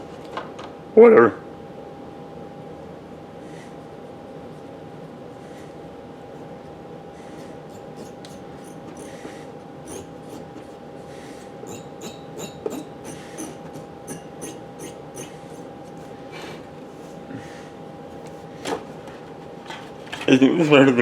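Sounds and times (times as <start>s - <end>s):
steady background tone: 3.8s - 19.1s.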